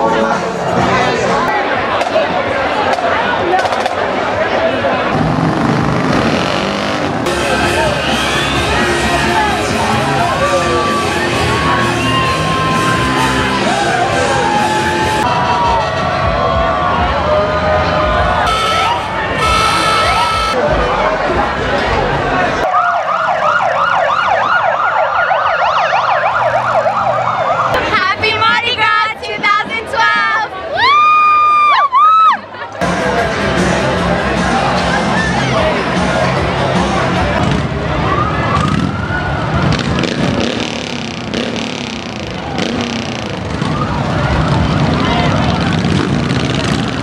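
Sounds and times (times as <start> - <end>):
vehicle running: 0.0 - 22.6, 32.8 - 47.0
crowd chatter: 0.0 - 47.0
rising and falling tone: 5.1 - 8.8
emergency siren fast yelp: 18.4 - 20.6, 22.7 - 27.8.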